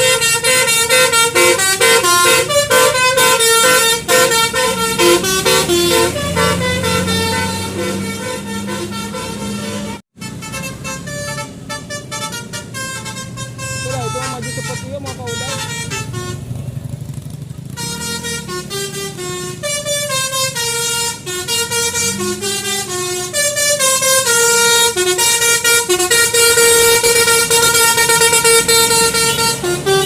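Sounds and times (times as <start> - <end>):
multi-tone bus air horn melody: 0.0 - 16.8, 17.6 - 30.0
vehicle engine running: 0.0 - 30.0.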